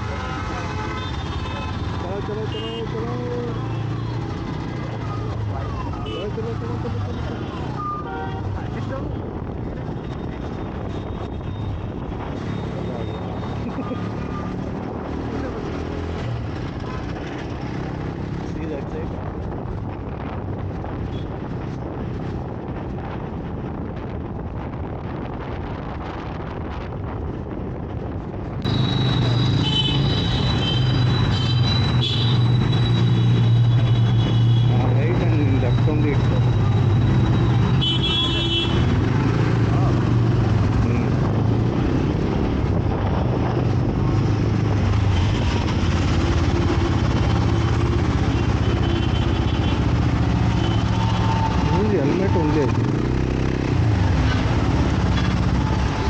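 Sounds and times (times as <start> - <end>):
wind noise: 3.6 - 56.0
vehicle engine drone: 8.7 - 22.8, 28.0 - 56.0
wind buffeting microphone: 19.0 - 29.6, 38.7 - 48.7.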